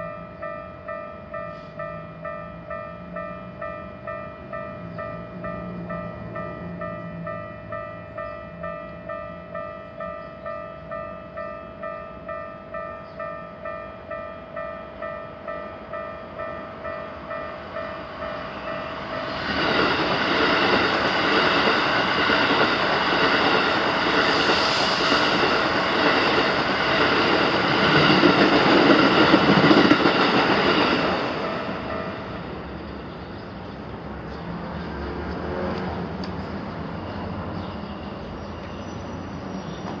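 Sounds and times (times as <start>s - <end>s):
level-crossing alarm bell ringing: 0.0s - 33.0s
train wheels rushing on rails: 16.7s - 37.6s.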